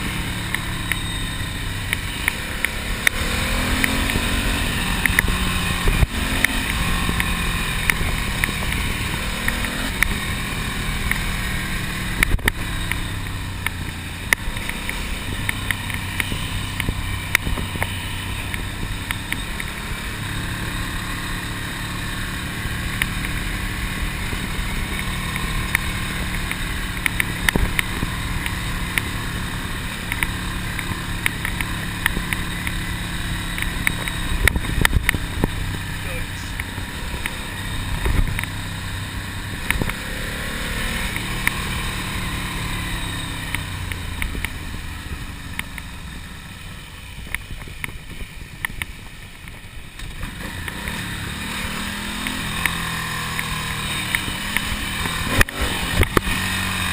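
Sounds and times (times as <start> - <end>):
motorcycle engine running: 0.0 - 56.9
wind rushing over microphone: 34.0 - 36.2.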